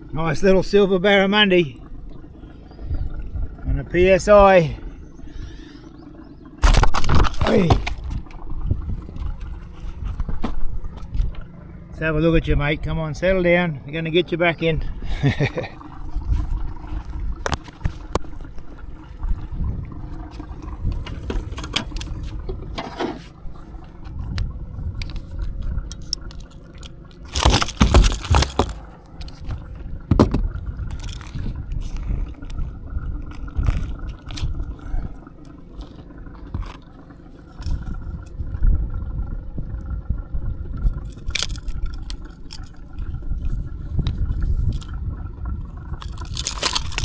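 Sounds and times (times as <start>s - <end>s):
fish thumping and rattling in boat: 6.6s - 8.3s, 21.1s - 23.2s, 25.9s - 28.8s, 30.1s - 31.5s, 41.0s - 43.0s, 46.0s - 47.0s.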